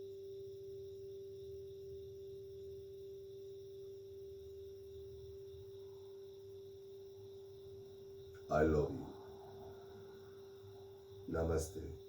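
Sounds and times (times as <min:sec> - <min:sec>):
faint higher tone: 0:00.0 - 0:12.0
sustained pure tone: 0:00.0 - 0:12.0.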